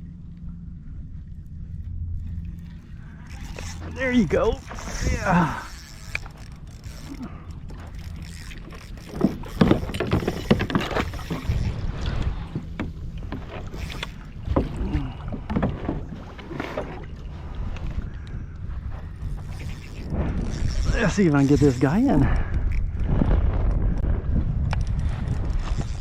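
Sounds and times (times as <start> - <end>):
low wind rumble on microphone: 0.0 - 26.0
knocks and handling noise on kayak: 6.0 - 20.7.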